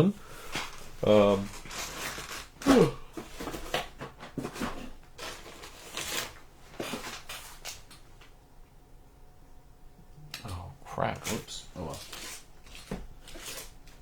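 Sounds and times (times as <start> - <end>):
packaging rustling and tapping: 0.5 - 8.3, 11.2 - 14.0.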